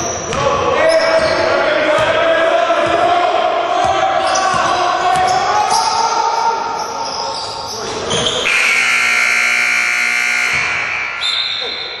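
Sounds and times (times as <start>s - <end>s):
echoing gym noise: 0.0s - 12.0s
scoreboard buzzer blast: 8.5s - 11.2s.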